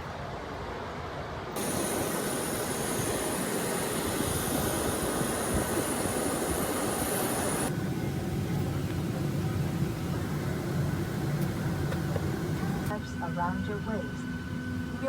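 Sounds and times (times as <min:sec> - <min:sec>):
jet cabin engine and air rush: 0:00.0 - 0:15.0
thin high whine: 0:01.6 - 0:07.7.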